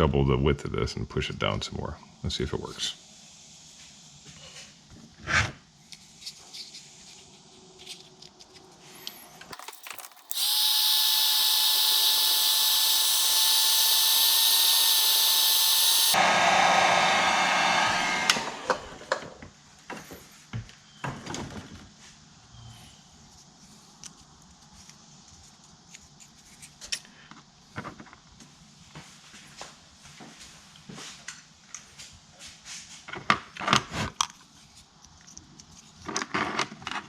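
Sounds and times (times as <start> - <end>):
tool handling clicks: 9.5 - 16.2
rotary tool motor whining: 9.6 - 18.8.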